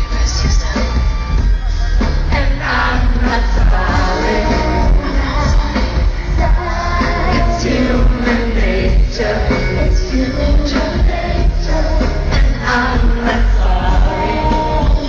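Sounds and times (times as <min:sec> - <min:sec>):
live pop music with bass beat: 0:00.0 - 0:15.0
person singing: 0:00.0 - 0:15.0.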